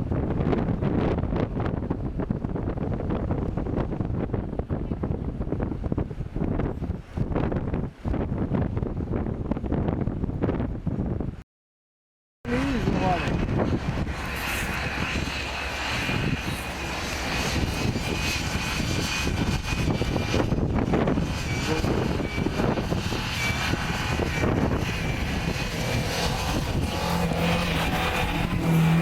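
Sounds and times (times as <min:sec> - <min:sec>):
off-road engine running hard: 0:12.5 - 0:29.0.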